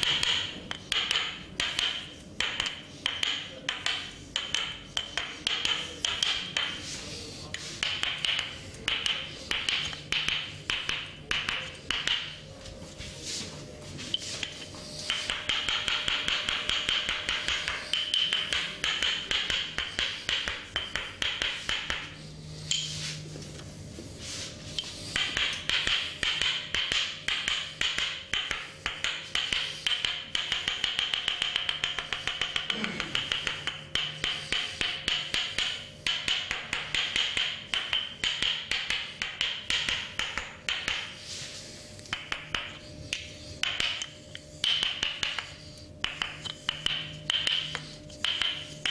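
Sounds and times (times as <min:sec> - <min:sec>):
hands tapping on body: 0:42.1 - 0:48.9.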